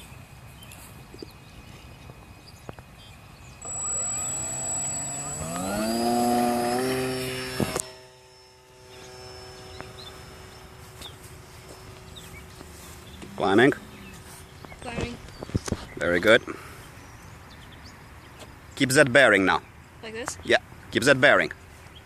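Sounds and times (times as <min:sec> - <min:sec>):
model airplane engine throttling up: 0:03.6 - 0:14.9.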